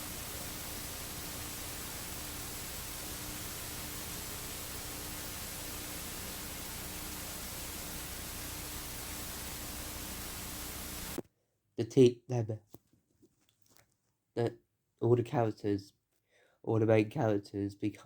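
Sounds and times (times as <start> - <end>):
recording noise hiss: 0.0 - 11.2.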